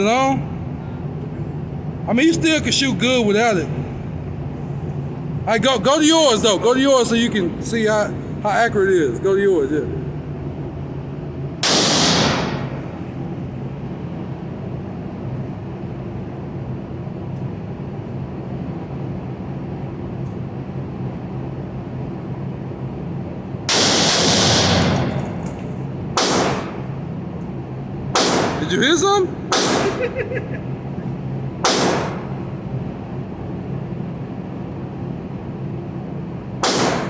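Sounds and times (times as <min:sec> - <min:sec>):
steady low hum: 0:00.0 - 0:37.0
rifle shots with echo: 0:11.6 - 0:13.0, 0:23.7 - 0:25.2, 0:26.2 - 0:26.8, 0:28.2 - 0:28.6, 0:29.5 - 0:30.0, 0:31.6 - 0:32.4, 0:36.6 - 0:37.0.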